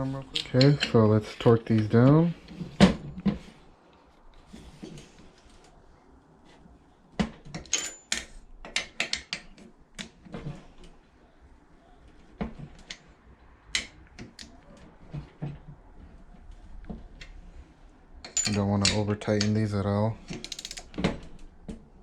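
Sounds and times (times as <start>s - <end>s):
torque wrench ratcheting clicks: 20.4s - 20.9s.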